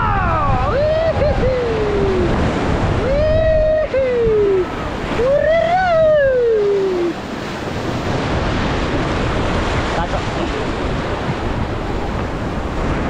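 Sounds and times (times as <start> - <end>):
person shouting: 0.0 - 2.3, 3.0 - 7.2
rushing whitewater: 0.0 - 13.0.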